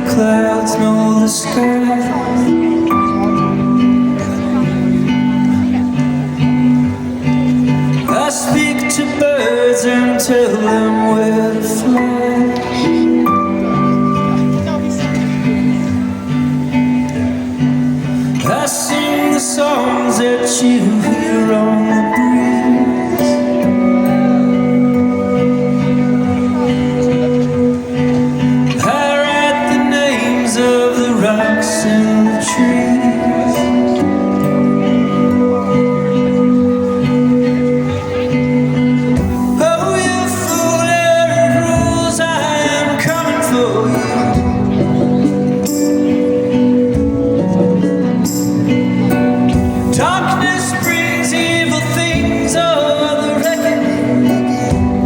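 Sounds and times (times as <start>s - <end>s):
live band playing: 0.0s - 55.0s
strummed acoustic guitar: 0.0s - 55.0s.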